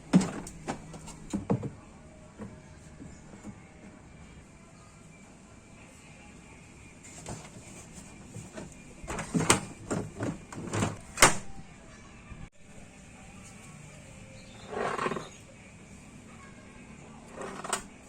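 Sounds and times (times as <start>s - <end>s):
scraping rustle: 7.0s - 11.1s, 14.5s - 15.4s, 17.3s - 18.0s.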